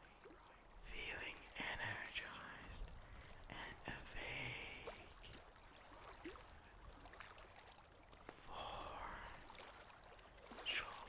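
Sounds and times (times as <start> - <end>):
whispering breath: 0.9 - 5.3, 8.3 - 9.5, 10.5 - 11.0.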